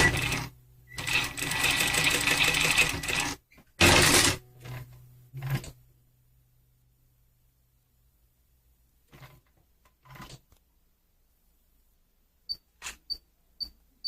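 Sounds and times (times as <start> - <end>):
sewing machine stitching fast: 0.0 - 4.4.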